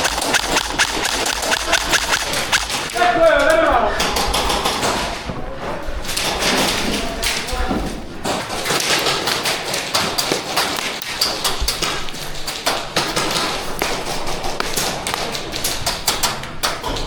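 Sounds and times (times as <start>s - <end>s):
airsoft guns firing: 0.0s - 5.2s.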